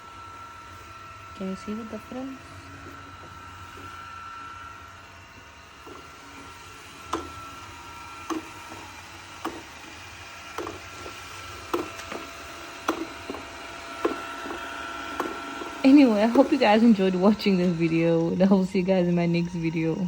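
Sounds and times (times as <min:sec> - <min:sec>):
robot vacuum motor whine: 0:00.0 - 0:20.0
regular knocking: 0:10.5 - 0:15.8.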